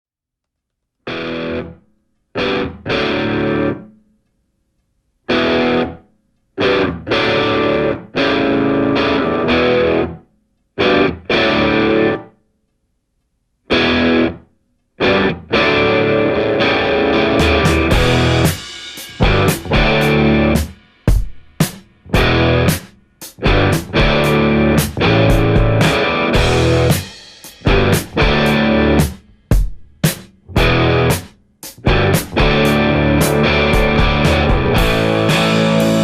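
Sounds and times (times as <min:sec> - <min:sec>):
distorted electric guitar chords: 0:01.1 - 0:01.8, 0:02.4 - 0:03.9, 0:05.3 - 0:06.0, 0:06.6 - 0:10.2, 0:10.8 - 0:12.3, 0:13.7 - 0:14.4, 0:15.0 - 0:20.8, 0:22.1 - 0:29.2, 0:30.5 - 0:36.0.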